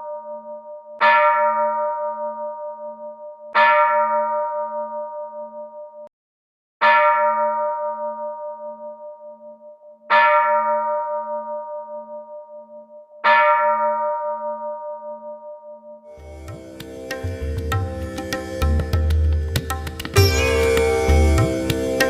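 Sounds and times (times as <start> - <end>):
temple bell ringing: 16.2 - 22.0.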